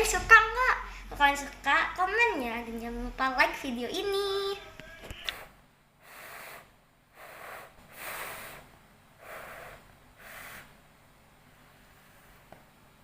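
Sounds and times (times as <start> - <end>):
person breathing audibly: 0.8 - 1.2, 5.2 - 10.8.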